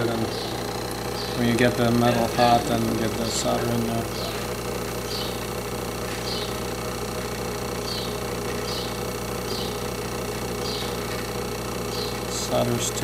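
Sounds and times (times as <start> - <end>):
fume extractor fan humming: 0.0 - 13.0.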